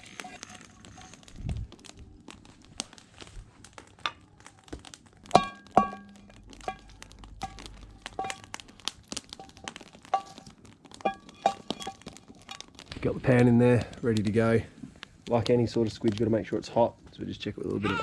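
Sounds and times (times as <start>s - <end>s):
metal pan clinking: 5.3s - 8.6s, 9.4s - 12.5s.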